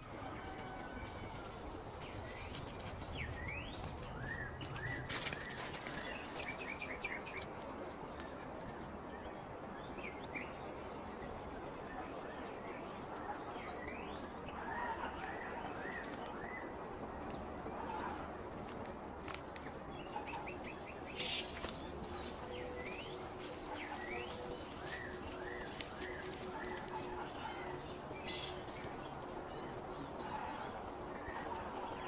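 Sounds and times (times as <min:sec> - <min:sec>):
birds chirping: 0:00.0 - 0:32.0.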